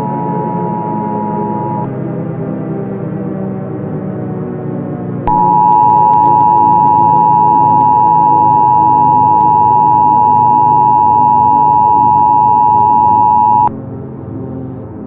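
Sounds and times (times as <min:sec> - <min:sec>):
two-tone alert beep: 0:00.0 - 0:01.9, 0:05.3 - 0:13.7.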